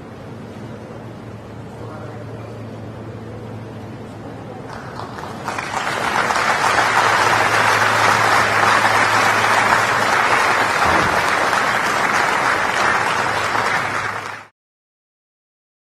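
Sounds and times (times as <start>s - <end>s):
crowd applauding: 4.7s - 14.5s.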